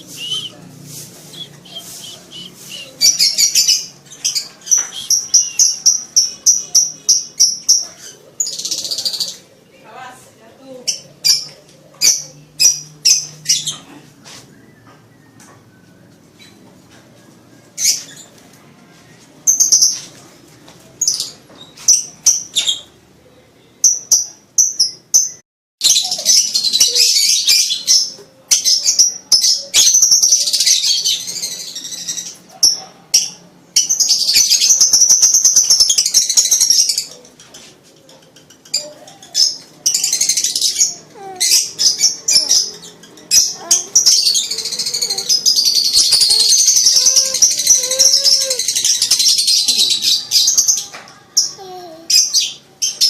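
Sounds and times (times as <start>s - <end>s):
lovebird chirping and chattering: 0.0s - 9.5s, 23.8s - 53.0s.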